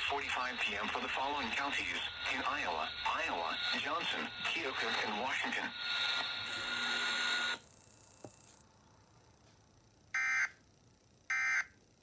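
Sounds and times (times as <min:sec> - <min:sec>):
buzzy digital tone bursts: 0:00.2 - 0:08.1.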